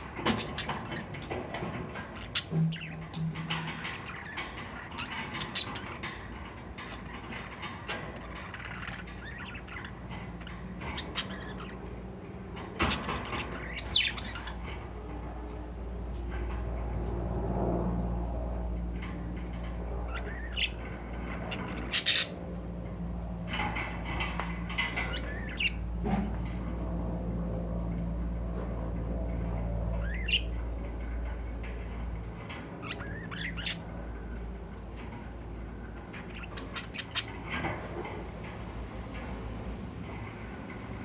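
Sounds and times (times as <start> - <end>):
steady low hum: 0.0 - 41.0
budgerigars chirping and squawking: 8.5 - 11.8, 12.8 - 14.7, 20.1 - 22.4, 25.0 - 25.8, 30.0 - 30.6, 32.8 - 34.0, 36.1 - 38.0.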